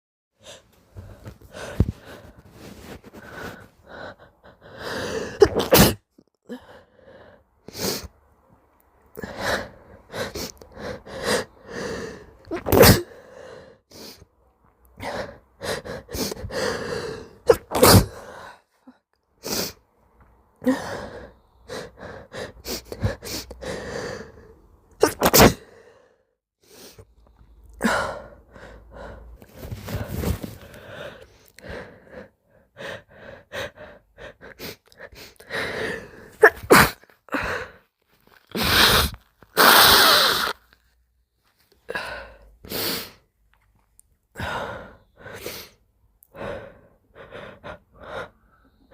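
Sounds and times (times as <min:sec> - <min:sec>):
person gasping breaths: 0:00.4 - 0:05.4, 0:06.5 - 0:08.1, 0:09.2 - 0:14.3, 0:15.0 - 0:17.5, 0:20.6 - 0:24.6, 0:25.6 - 0:36.5, 0:37.3 - 0:40.6, 0:44.4 - 0:48.9
person sneezing: 0:05.4 - 0:06.0, 0:12.5 - 0:13.2, 0:17.5 - 0:18.2, 0:25.0 - 0:25.7, 0:36.4 - 0:37.1, 0:38.5 - 0:40.6.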